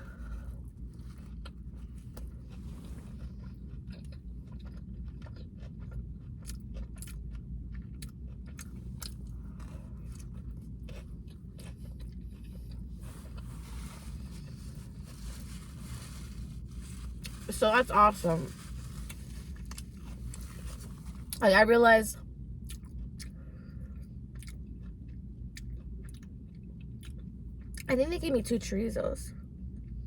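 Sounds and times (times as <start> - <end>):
person chewing food: 0.0 - 21.4, 22.6 - 27.9
low hum: 0.0 - 30.0.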